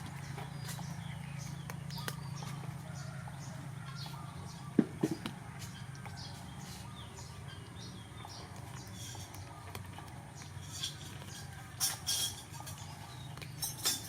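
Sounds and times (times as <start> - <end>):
small birds chirping: 0.0 - 14.0
sharp knocks: 4.8 - 5.4.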